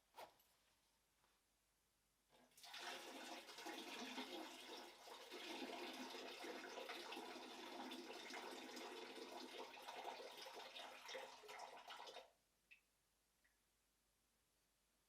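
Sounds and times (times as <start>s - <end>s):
urine splashing into toilet water: 2.5s - 12.3s.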